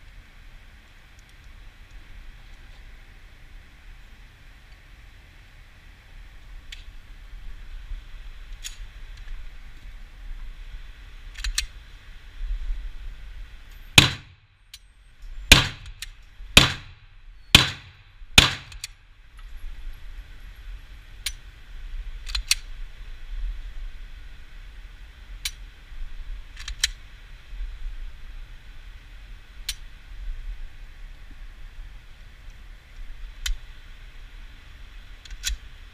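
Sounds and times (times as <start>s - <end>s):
pistol shots: 14.0s - 14.3s, 15.5s - 16.0s, 16.6s - 18.9s.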